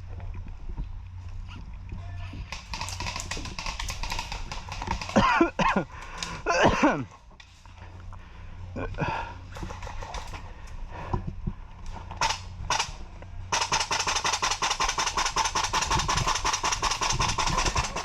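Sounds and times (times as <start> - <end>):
airsoft gun firing: 2.5 - 5.2, 12.2 - 18.0.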